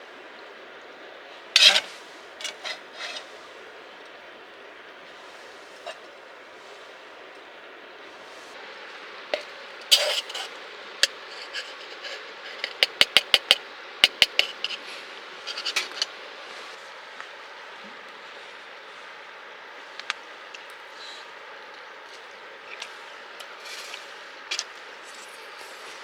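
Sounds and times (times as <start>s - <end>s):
background hiss: 0.0s - 26.0s
hard objects clattering: 9.4s - 14.8s.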